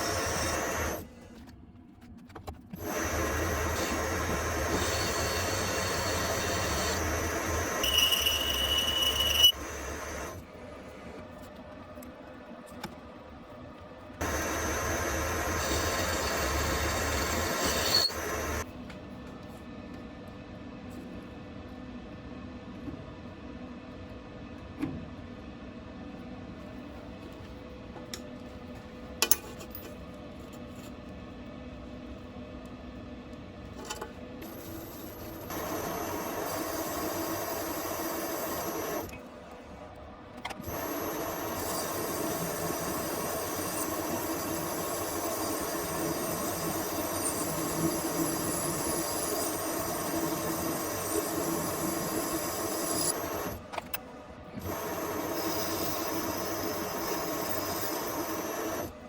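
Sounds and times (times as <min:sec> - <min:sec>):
electric machine tool whine: 0:00.0 - 0:01.0, 0:02.8 - 0:10.4, 0:14.2 - 0:18.6, 0:34.4 - 0:39.1, 0:40.6 - 0:53.6, 0:54.6 - 0:58.9.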